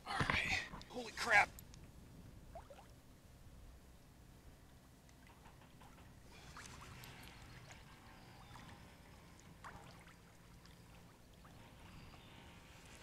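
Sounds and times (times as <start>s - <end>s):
water splashing and dripping: 5.1s - 11.6s.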